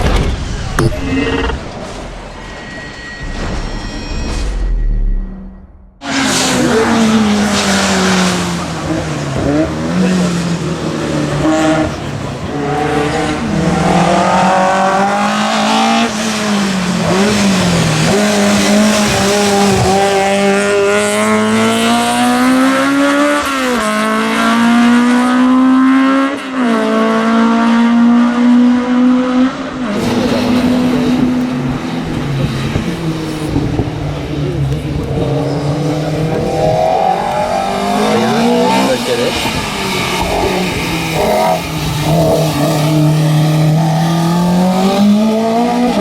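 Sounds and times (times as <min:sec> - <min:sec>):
racing car engine accelerating: 0:05.9 - 0:46.0.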